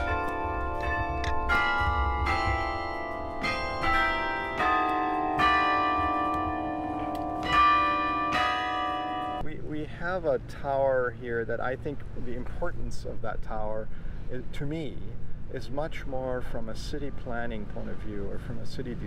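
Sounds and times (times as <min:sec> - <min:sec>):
tower bells playing a tune: 0:00.0 - 0:09.4.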